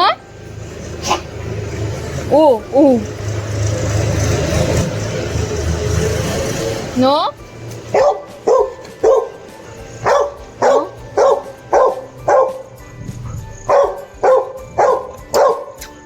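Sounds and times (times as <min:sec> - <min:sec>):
dog barking: 0:01.0 - 0:01.4, 0:07.9 - 0:15.8.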